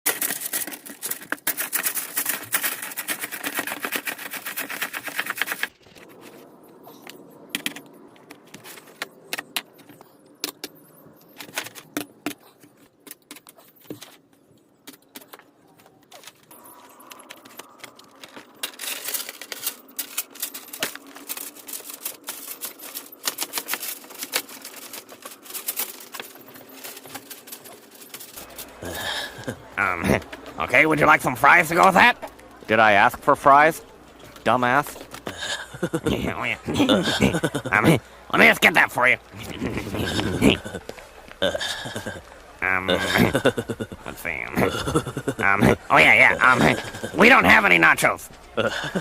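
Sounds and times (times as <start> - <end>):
rapid clicking and rattling: 0.1 - 6.0, 16.2 - 32.1.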